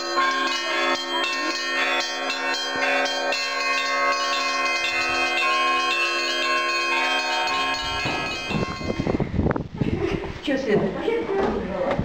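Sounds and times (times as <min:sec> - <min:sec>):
church bells ringing: 0:00.0 - 0:09.4
deep steady bell tone: 0:00.0 - 0:09.4.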